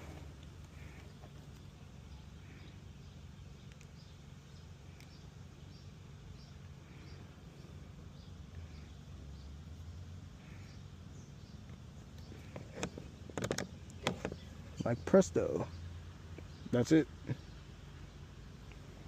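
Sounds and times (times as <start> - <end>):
small birds chirping: 0.0 - 19.0
steady low hum: 0.0 - 19.0
faint clicks: 3.6 - 4.0, 4.9 - 5.2.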